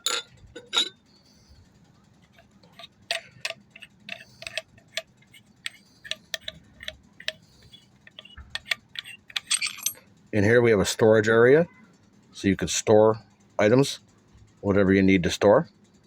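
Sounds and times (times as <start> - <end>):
metallic clicks and clinks: 0.0 - 1.0, 2.4 - 10.0.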